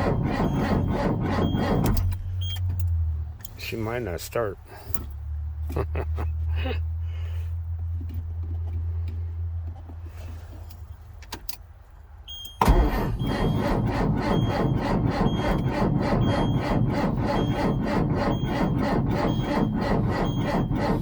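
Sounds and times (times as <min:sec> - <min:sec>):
starter cranking diesel engine: 0:00.0 - 0:02.4, 0:12.6 - 0:21.0.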